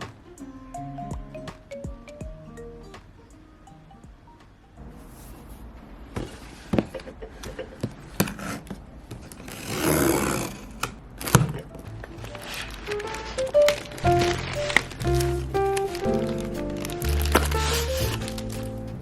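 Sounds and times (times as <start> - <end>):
soft background music: 0.0 - 5.5, 11.3 - 19.0.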